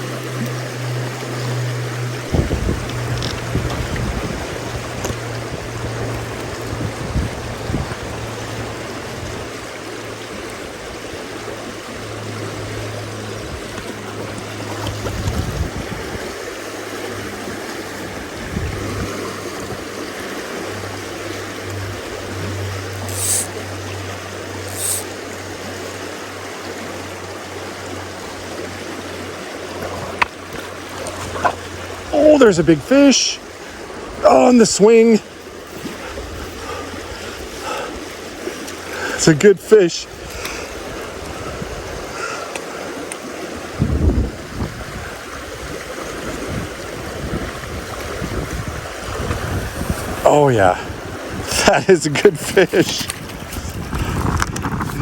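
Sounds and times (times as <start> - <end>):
stream running over rocks: 0.0 - 55.0.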